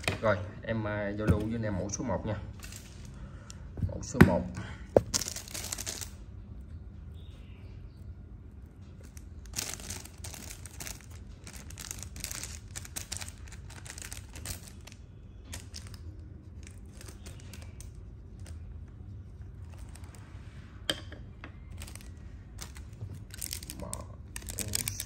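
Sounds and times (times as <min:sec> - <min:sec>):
crinkling and rustling: 0:04.9 - 0:06.2, 0:08.6 - 0:20.7, 0:21.6 - 0:25.0.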